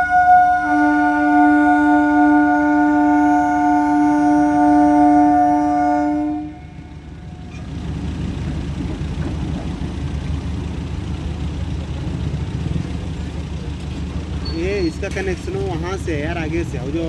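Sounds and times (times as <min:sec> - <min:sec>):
train horn: 0:00.0 - 0:07.8
train rumbling: 0:00.0 - 0:17.0.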